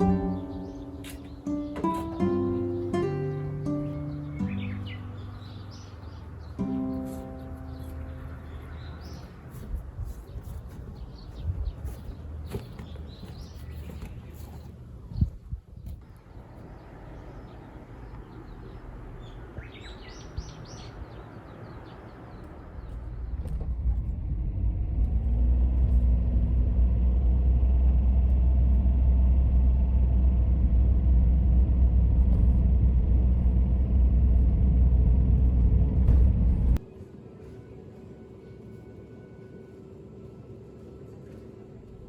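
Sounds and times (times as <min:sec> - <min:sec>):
bird chirps: 0:00.0 - 0:14.7, 0:16.3 - 0:23.4
loud low rumble with hum: 0:22.1 - 0:42.0.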